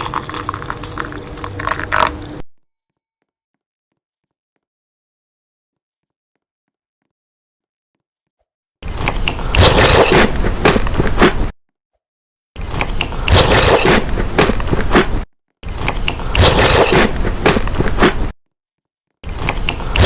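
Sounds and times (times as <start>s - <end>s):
crunchy food being chewed: 8.8s - 11.5s, 12.6s - 18.4s.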